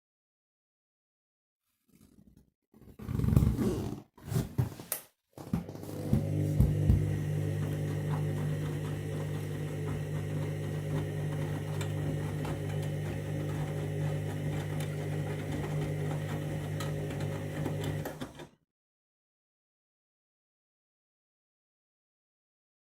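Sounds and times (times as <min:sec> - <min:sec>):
washing machine motor hum: 0:05.6 - 0:18.5.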